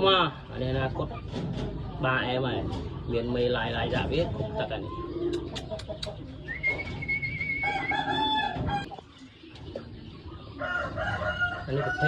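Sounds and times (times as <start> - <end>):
rooster crowing: 7.6 - 8.9, 10.6 - 12.0.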